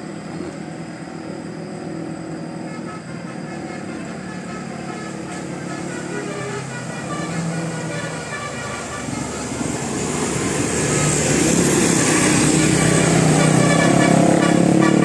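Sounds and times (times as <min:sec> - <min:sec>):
bus engine: 0:00.0 - 0:15.0
multi-tone musical horn: 0:02.6 - 0:09.8, 0:11.6 - 0:15.0.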